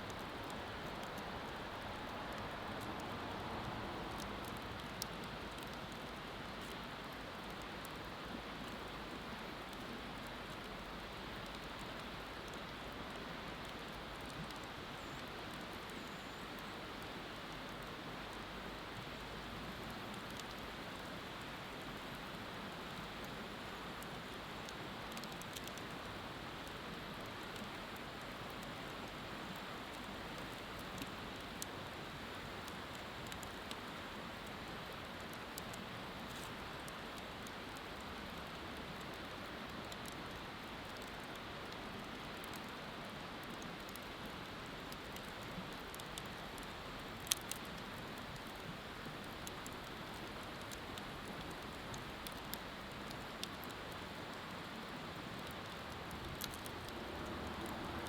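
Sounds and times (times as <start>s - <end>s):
bonfire crackling and popping: 0.1s - 58.0s
river water flowing: 44.3s - 58.0s.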